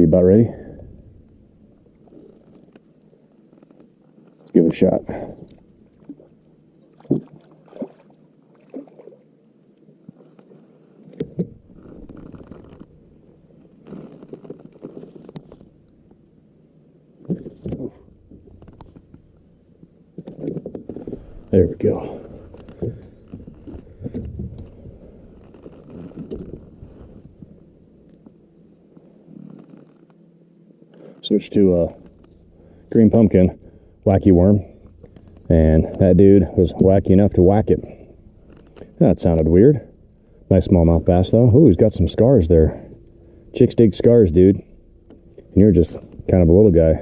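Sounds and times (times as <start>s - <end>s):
low rumbling: 0.0s - 2.6s, 20.8s - 29.4s
steady rustle: 0.5s - 8.6s, 9.5s - 47.0s.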